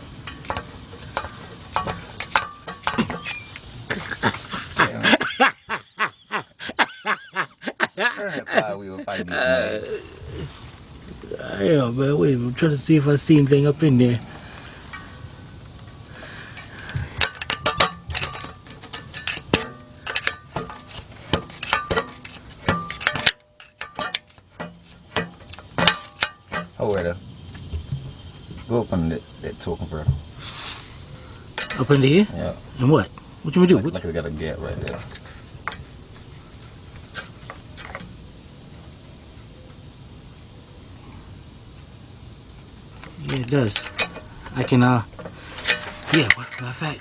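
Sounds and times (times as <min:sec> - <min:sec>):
screwdriver clicking and scraping metal: 0:16.6 - 0:26.6.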